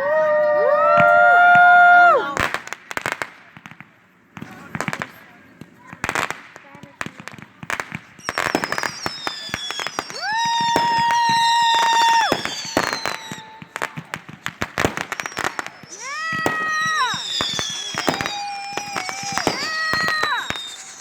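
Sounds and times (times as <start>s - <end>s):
firework pops and crackles: 0.8s - 21.0s
firework whistles: 7.7s - 21.0s.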